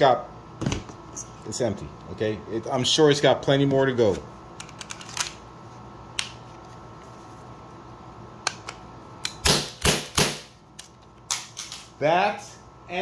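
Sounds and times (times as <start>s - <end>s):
air pistol loud snaps: 8.5s - 11.9s.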